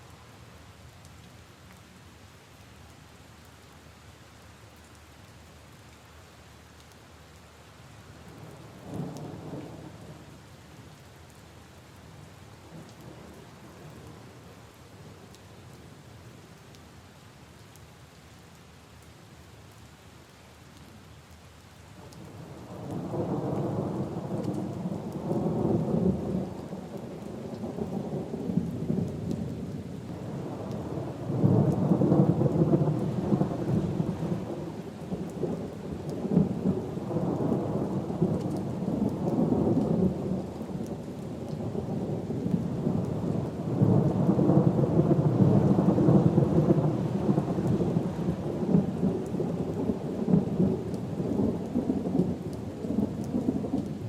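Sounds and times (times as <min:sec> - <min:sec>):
light rain: 0:00.0 - 0:54.0
rolling thunder rumble: 0:30.2 - 0:54.0.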